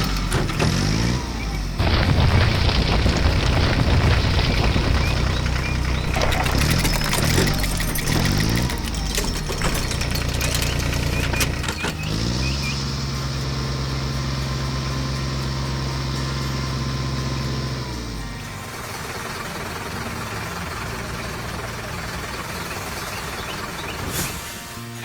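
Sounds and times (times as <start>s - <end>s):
cartoon clicks and clattering: 5.3s - 12.4s.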